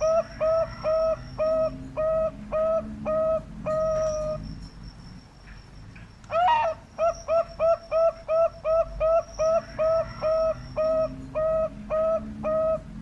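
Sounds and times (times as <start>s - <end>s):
dove cooing: 0.0s - 4.6s, 6.3s - 13.0s
faint steady high tone: 0.0s - 7.7s.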